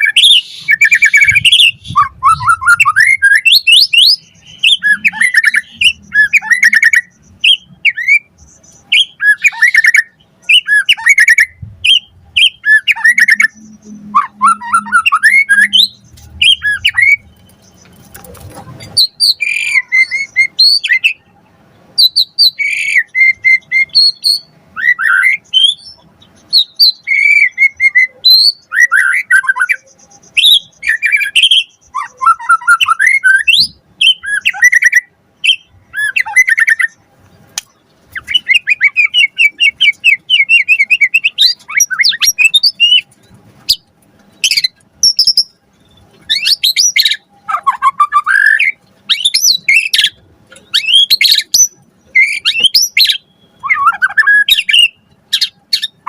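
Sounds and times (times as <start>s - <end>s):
bird singing: 0.0s - 56.0s.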